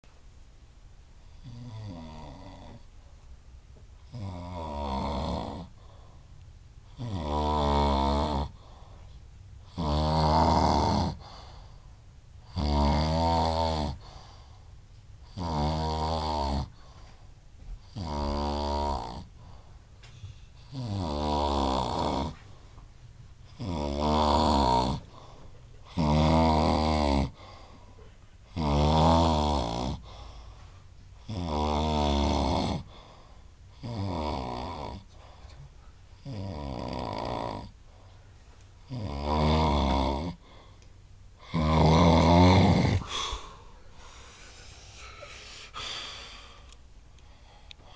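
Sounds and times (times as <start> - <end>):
long buzzing snore: 1.4 - 2.9, 4.1 - 6.2, 6.9 - 8.9, 9.6 - 11.7, 12.4 - 14.6, 15.2 - 16.9, 17.8 - 19.7, 20.6 - 22.4, 23.5 - 27.7, 28.5 - 30.4, 31.2 - 35.4, 36.2 - 37.8, 38.8 - 40.7, 41.4 - 46.6.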